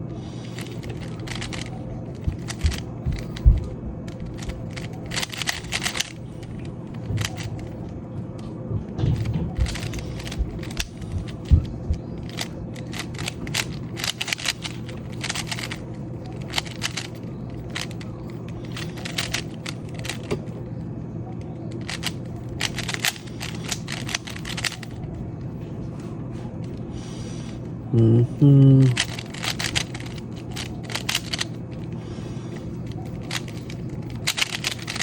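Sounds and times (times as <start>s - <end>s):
puzzle cube layers clacking: 0.6s - 3.5s, 4.1s - 7.6s, 9.6s - 18.0s, 18.6s - 20.4s, 21.8s - 24.8s, 28.8s - 31.5s, 33.2s - 33.5s, 34.1s - 35.0s.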